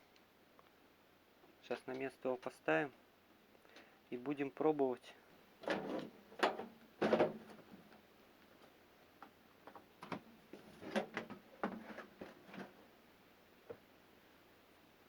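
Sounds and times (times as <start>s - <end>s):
loud clunk: 5.6s - 7.7s
clicks and knocks of handling parts: 5.6s - 12.8s.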